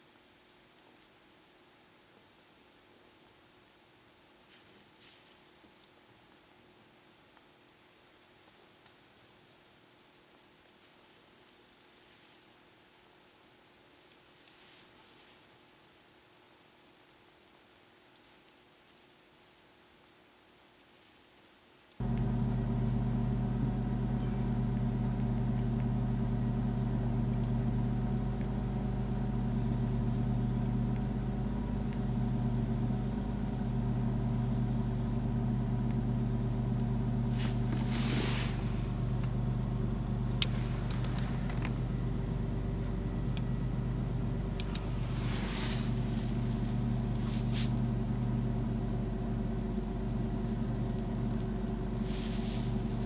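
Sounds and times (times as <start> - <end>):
car engine idling: 22.0 - 53.0.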